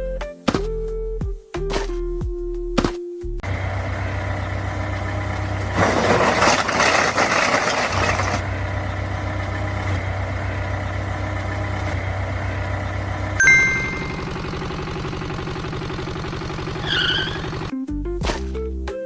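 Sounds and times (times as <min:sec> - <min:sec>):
truck engine idling: 0:03.4 - 0:17.7
short ding: 0:13.4 - 0:14.4.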